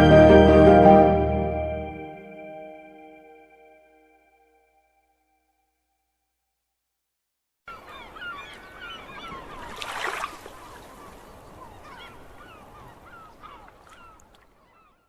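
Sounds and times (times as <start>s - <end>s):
flock of birds calling: 7.7s - 15.0s.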